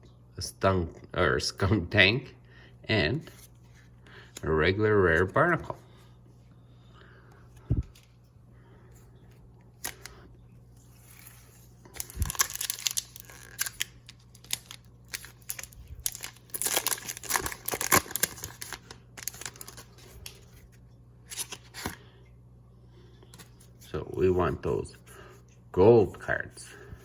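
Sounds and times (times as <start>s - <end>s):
foil wrapper tearing and crinkling: 11.0s - 20.5s.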